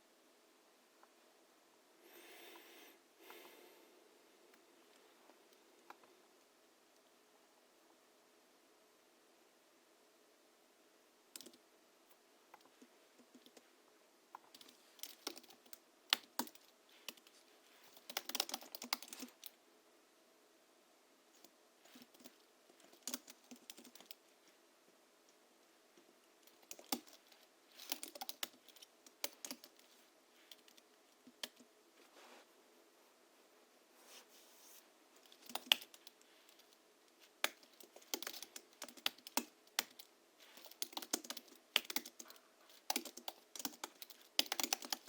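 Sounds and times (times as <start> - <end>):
keyboard typing: 11.4 - 11.6, 14.4 - 17.3, 17.9 - 19.5, 21.4 - 24.2, 26.5 - 29.9, 35.2 - 36.8, 37.4 - 45.0.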